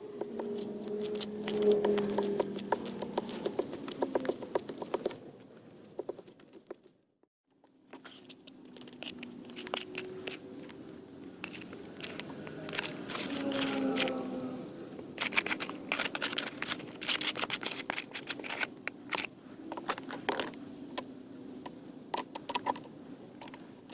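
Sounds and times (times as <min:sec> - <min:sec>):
scraping and crinkling of cement mixing: 0:00.0 - 0:06.8, 0:07.8 - 0:20.7.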